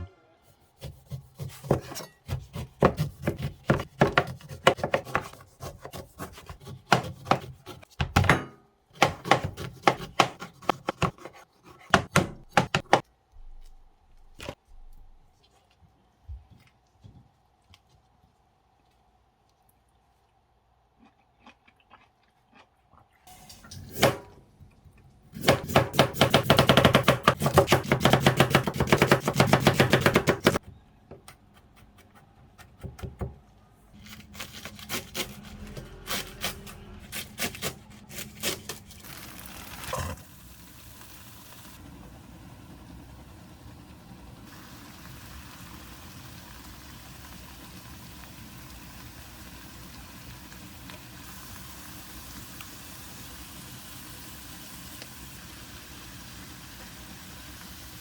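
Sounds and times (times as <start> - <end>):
knife chopping on cutting board: 0.8 - 13.0, 25.4 - 30.6.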